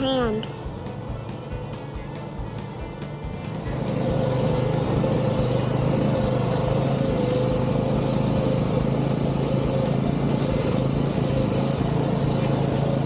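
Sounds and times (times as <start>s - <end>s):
snowmobile engine droning: 2.8s - 13.0s.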